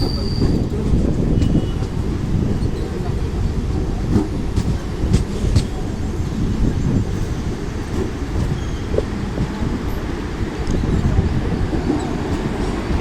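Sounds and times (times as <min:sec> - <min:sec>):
train wheels rumbling on rails: 0:00.0 - 0:13.0.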